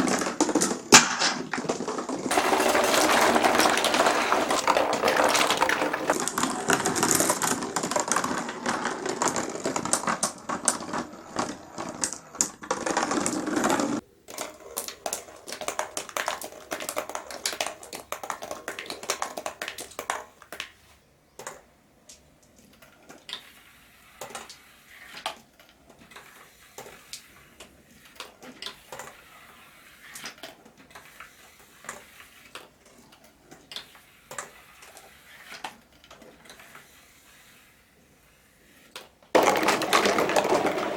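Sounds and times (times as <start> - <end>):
glass marbles rolling and clacking: 0.0 - 20.7, 39.4 - 40.9.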